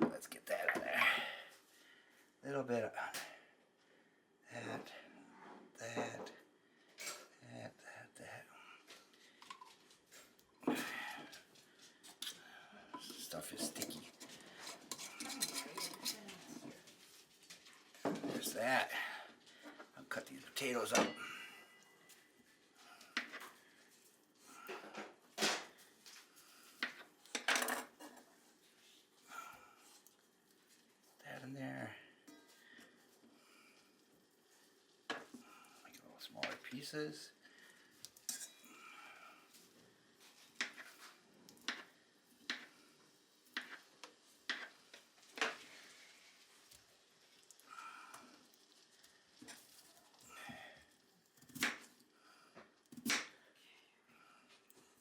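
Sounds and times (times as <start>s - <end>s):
knife and kitchenware clatter: 13.0s - 16.8s, 38.2s - 38.8s.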